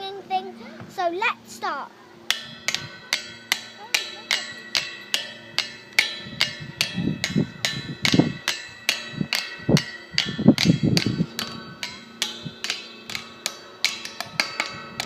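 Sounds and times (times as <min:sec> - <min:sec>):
fence being banged: 0:02.3 - 0:15.0
heavy low thumps: 0:02.4 - 0:13.4.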